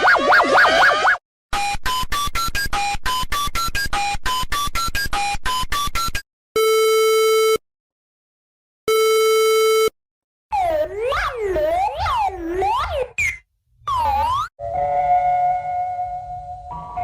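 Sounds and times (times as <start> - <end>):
siren sweeping in pitch: 10.6 - 17.0.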